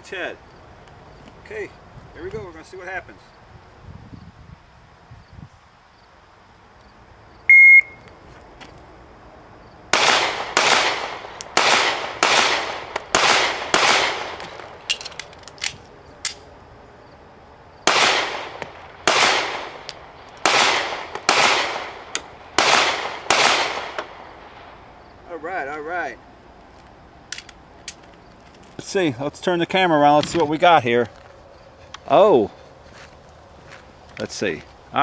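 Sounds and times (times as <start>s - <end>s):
electronic timer beep: 7.5s - 8.0s
pistol shots: 9.9s - 14.8s, 17.8s - 24.8s
magazine reload clicks: 14.4s - 16.5s, 27.3s - 28.2s.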